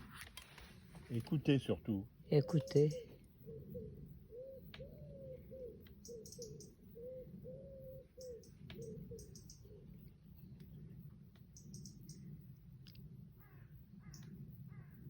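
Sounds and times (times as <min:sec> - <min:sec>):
doves cooing: 0:00.0 - 0:15.0
faint high chirps: 0:02.2 - 0:14.4
low background rumble: 0:03.0 - 0:15.0.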